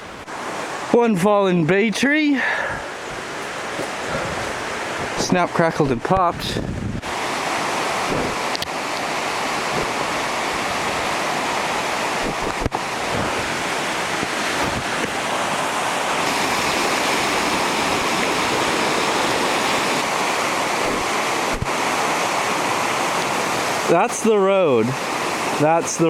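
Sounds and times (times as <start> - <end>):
floodwater rushing: 0.0 - 26.0.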